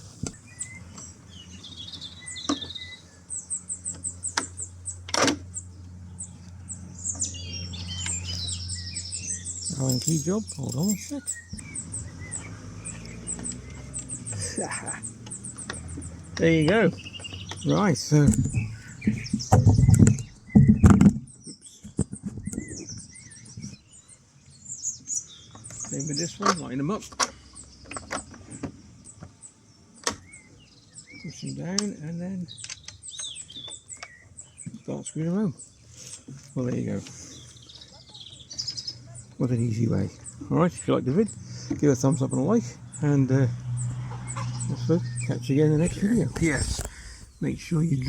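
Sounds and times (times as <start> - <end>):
small birds chirping: 0.0 - 48.0
hands handling parts: 9.7 - 11.4
sharp knocks: 18.2 - 21.3.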